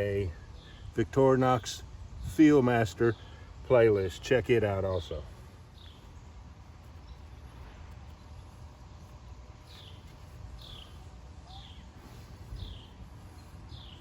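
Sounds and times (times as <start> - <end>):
bird chirping: 4.9 - 14.0.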